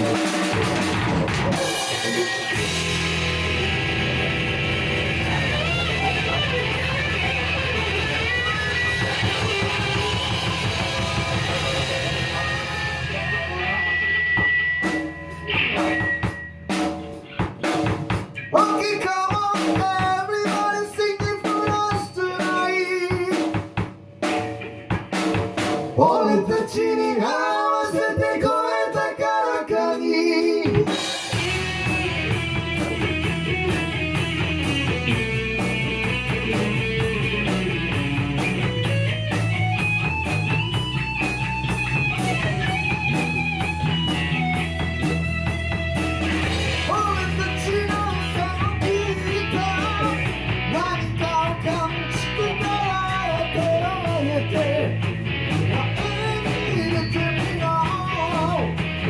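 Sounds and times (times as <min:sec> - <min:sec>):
drum kit hits: 0:00.0 - 0:13.5, 0:14.3 - 0:26.2, 0:30.7 - 0:50.8
melodic guitar line: 0:00.0 - 0:18.7, 0:30.8 - 0:59.0
rock band playing: 0:00.0 - 0:29.6, 0:30.3 - 0:59.0.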